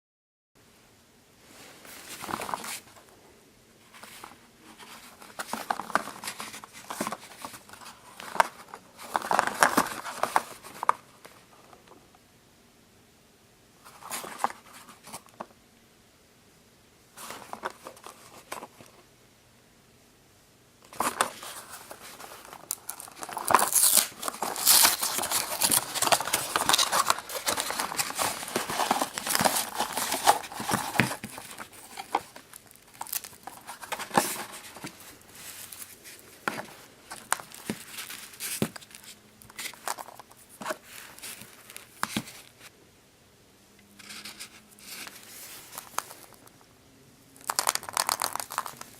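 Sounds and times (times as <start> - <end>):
foil wrapper crinkling and tearing: 21.0 - 35.9, 47.4 - 48.9.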